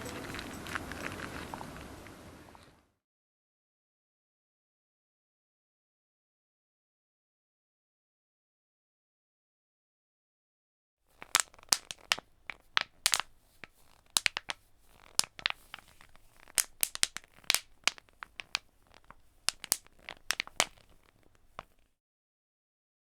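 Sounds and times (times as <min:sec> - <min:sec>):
plastic bottle crinkling: 0:11.1 - 0:21.9.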